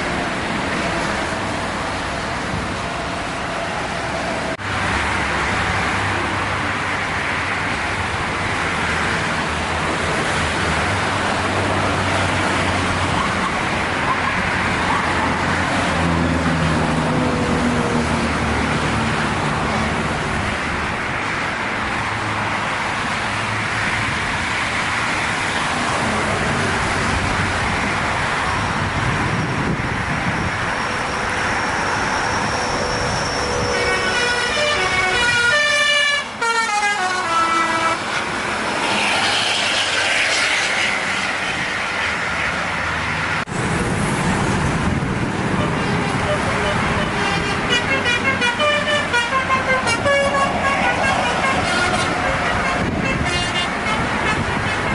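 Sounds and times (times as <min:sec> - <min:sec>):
road traffic: 0:00.0 - 0:54.9
multi-tone musical air horn: 0:33.7 - 0:38.1, 0:45.6 - 0:54.9.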